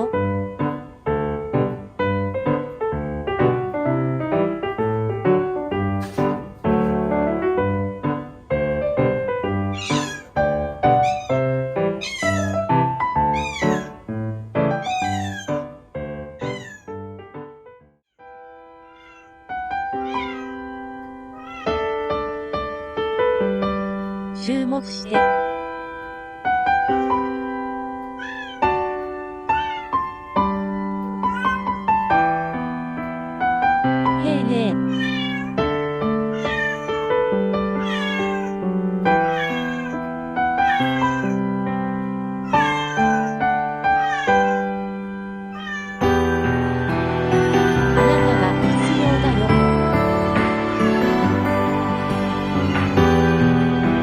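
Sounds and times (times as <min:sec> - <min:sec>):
gentle piano music: 0:00.0 - 0:54.0
kitten meowing: 0:09.7 - 0:14.0, 0:14.7 - 0:15.7, 0:16.4 - 0:17.0, 0:18.9 - 0:20.7, 0:21.3 - 0:22.0, 0:26.8 - 0:27.4, 0:28.2 - 0:28.8, 0:29.5 - 0:30.6, 0:31.2 - 0:31.9, 0:34.7 - 0:41.5, 0:42.4 - 0:44.8, 0:45.5 - 0:46.6, 0:50.6 - 0:51.6, 0:52.4 - 0:53.5.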